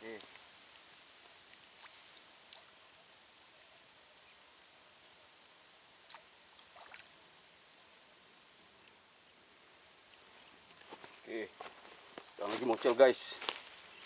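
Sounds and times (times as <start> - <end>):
faint outdoor hiss: 0.0 - 14.0
soft clicks and rustles: 9.9 - 14.0.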